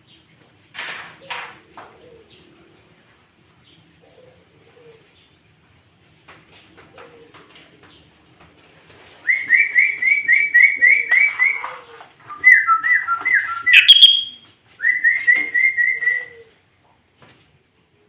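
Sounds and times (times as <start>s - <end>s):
songbird whistling: 9.3s - 11.6s, 12.3s - 16.4s.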